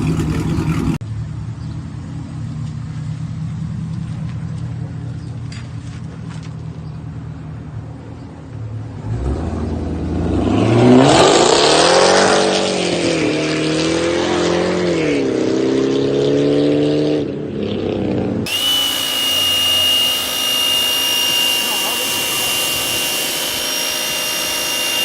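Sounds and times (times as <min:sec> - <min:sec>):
car engine revving: 0:18.5 - 0:25.0
steady high-pitched tone: 0:18.5 - 0:25.0.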